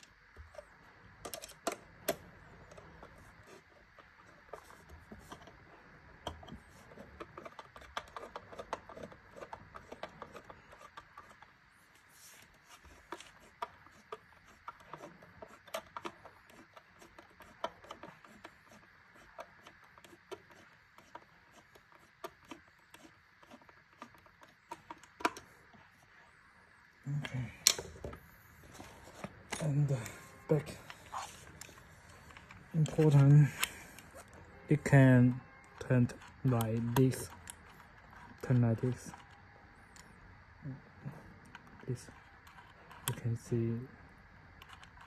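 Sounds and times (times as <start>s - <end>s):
lock hardware clicking and rubbing: 0.0s - 25.9s, 27.6s - 40.1s.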